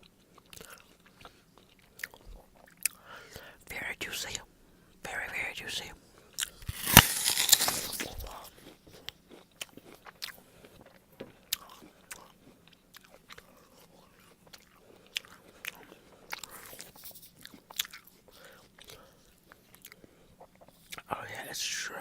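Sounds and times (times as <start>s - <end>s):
crunching bite into apple: 6.4s - 10.4s.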